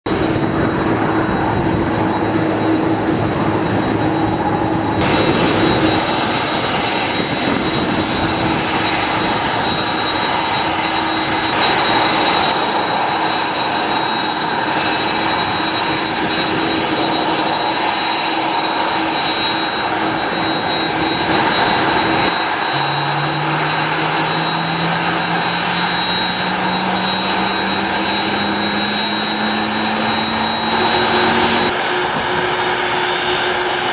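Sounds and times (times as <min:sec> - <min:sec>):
jet engines whining: 0:00.1 - 0:33.9
engines spooling up: 0:01.0 - 0:33.9.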